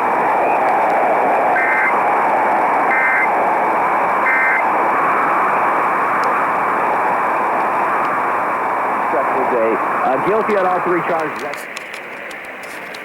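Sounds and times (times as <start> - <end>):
radio static hiss: 0.0 - 13.0
two-tone digital data bursts: 1.5 - 2.0, 2.9 - 3.3, 4.2 - 4.7.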